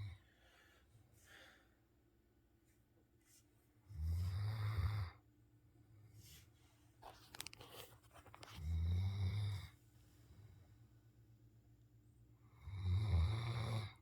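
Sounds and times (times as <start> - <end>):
person snoring: 12.6 - 14.0.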